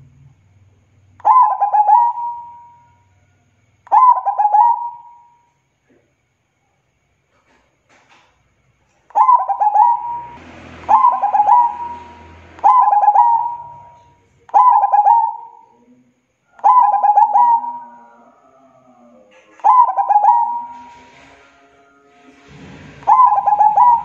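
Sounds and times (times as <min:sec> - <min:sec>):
dove cooing: 0:01.2 - 0:03.0, 0:03.9 - 0:05.3, 0:09.2 - 0:15.8, 0:16.6 - 0:21.4, 0:22.5 - 0:24.0.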